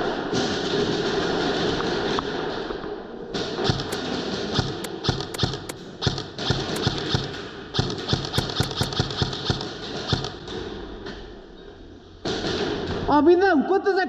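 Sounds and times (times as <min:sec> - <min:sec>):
sharp cracks: 0:03.7 - 0:10.6.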